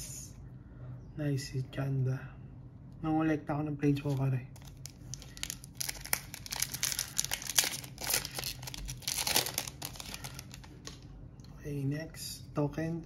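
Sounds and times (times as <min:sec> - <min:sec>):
plastic wrapper crinkling and tearing: 0:04.1 - 0:11.0.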